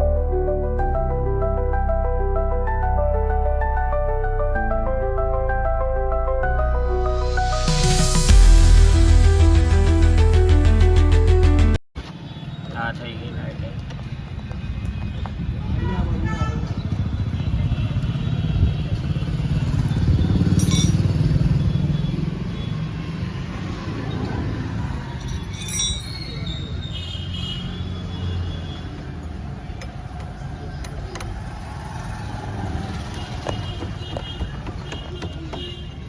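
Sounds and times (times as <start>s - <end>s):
motorbikes and traffic passing: 12.0s - 36.0s.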